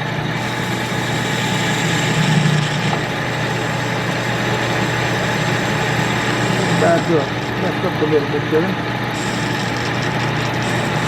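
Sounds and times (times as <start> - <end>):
lathe motor humming: 0.0 - 11.0
rotary phase converter hum: 0.0 - 11.0.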